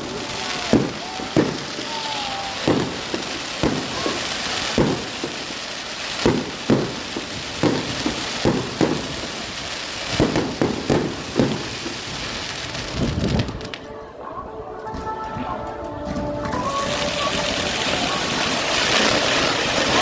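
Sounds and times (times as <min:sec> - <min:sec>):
firework whistle: 0:00.0 - 0:09.4, 0:16.4 - 0:20.0
crackling hiss: 0:00.0 - 0:13.9, 0:16.4 - 0:20.0
fireworks bangs: 0:00.0 - 0:13.9, 0:16.0 - 0:20.0.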